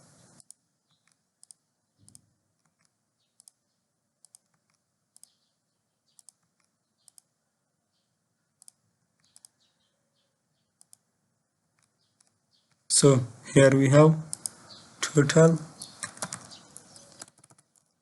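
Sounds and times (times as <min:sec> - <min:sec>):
computer keyboard clicks: 0:00.4 - 0:03.6, 0:04.2 - 0:05.4, 0:06.1 - 0:07.3, 0:08.6 - 0:09.6, 0:14.3 - 0:14.6, 0:15.9 - 0:18.0.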